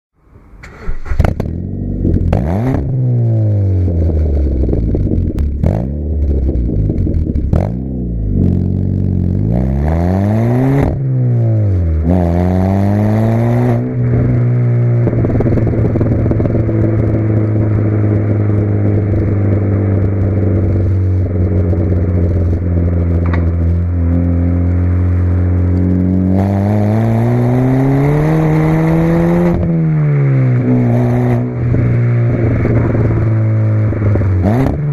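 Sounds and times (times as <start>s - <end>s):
car engine revving: 0.4s - 34.9s
exhaust pops: 0.6s - 9.6s, 13.6s - 26.9s, 29.3s - 34.9s.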